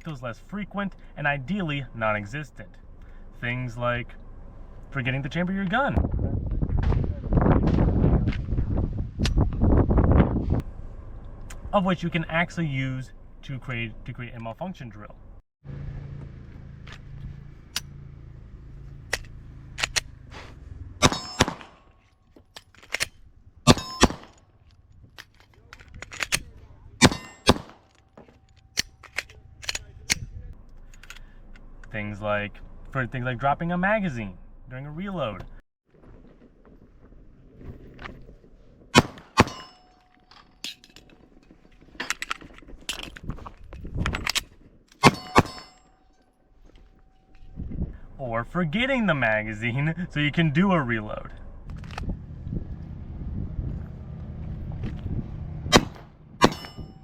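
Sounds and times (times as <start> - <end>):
gunshots: 19.8 - 21.9, 23.7 - 24.4, 27.0 - 27.9, 39.0 - 39.8, 45.0 - 45.8, 55.7 - 56.9
magazine dropped: 22.5 - 30.2.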